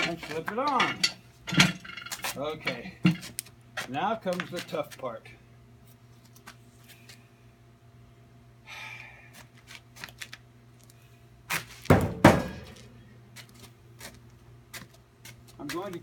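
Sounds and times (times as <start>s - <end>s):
tool rustle: 0.0s - 5.0s
loud metal knocks ringing: 11.9s - 12.8s.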